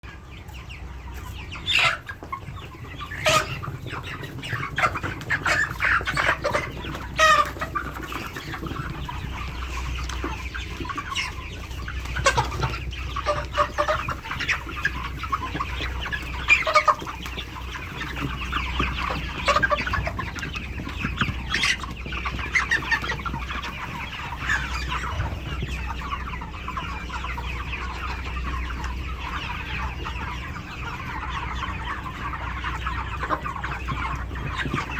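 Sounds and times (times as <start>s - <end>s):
chickens clucking chorus: 0.0s - 34.9s.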